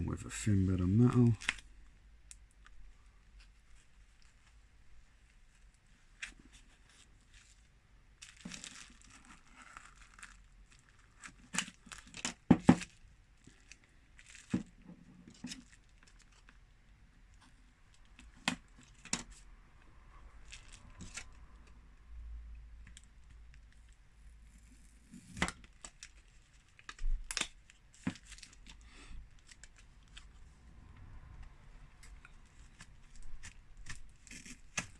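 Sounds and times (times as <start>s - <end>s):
metal tool scraping phone cover: 32.8s - 34.9s.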